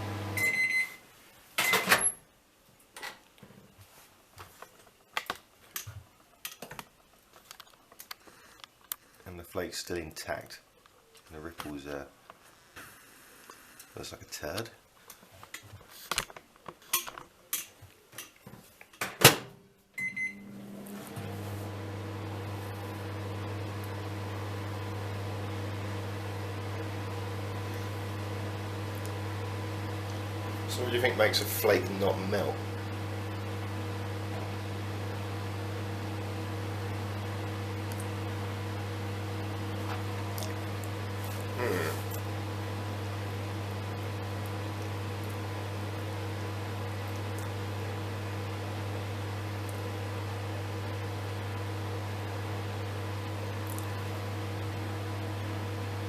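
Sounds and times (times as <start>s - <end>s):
microwave running hum: 0.0s - 1.0s, 19.4s - 56.0s.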